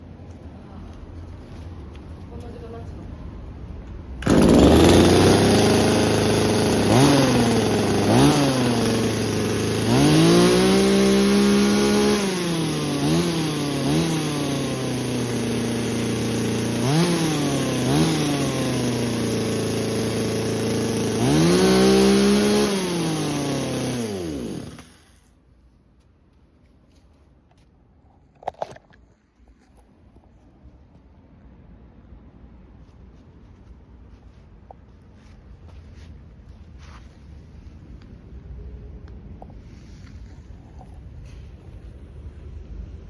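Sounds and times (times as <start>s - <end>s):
chainsaw idling and revving: 4.2s - 25.3s.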